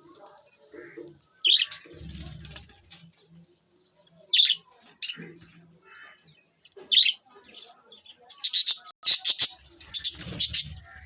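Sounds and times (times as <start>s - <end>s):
budgerigars chirping: 8.3s - 11.0s.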